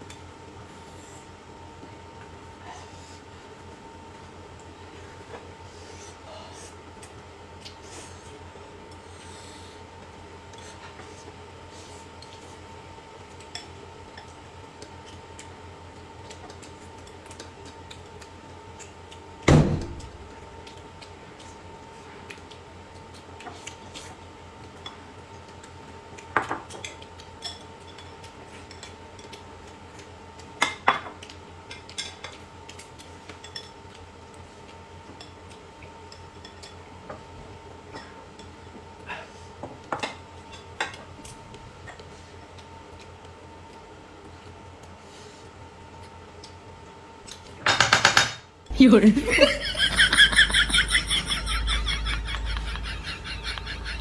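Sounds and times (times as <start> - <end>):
loud thump: 19.5 - 20.0
steady hum: 48.7 - 54.0.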